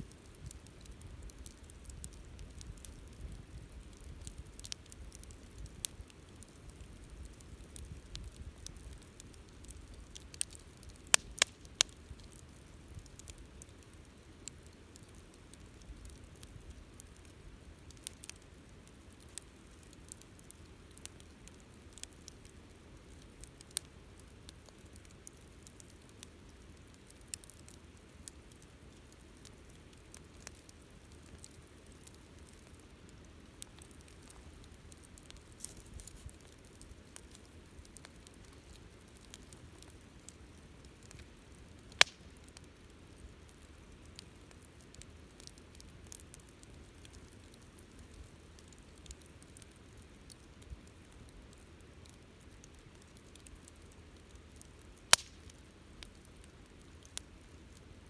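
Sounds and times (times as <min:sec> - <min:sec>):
campfire crackling: 0:00.0 - 0:58.0
faint fire hiss: 0:00.0 - 0:58.0
sharp fire pops: 0:10.0 - 0:13.8, 0:41.0 - 0:42.7, 0:54.9 - 0:56.2.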